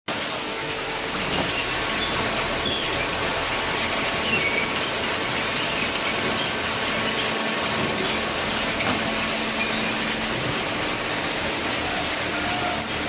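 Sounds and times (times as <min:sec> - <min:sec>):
high squeaks: 0:00.8 - 0:03.2, 0:04.1 - 0:07.4
baler mechanical din: 0:00.9 - 0:13.0.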